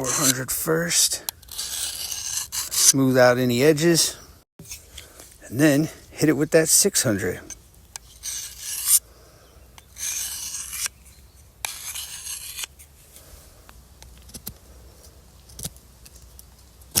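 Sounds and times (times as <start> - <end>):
knife scraping on sharpening plate: 0.0 - 0.4, 1.5 - 3.0, 8.0 - 9.0, 10.0 - 11.0, 11.6 - 12.7.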